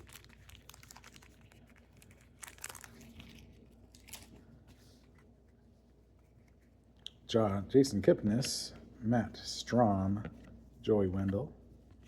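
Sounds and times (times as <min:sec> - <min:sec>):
wrapper tearing and crinkling: 0:00.0 - 0:04.4.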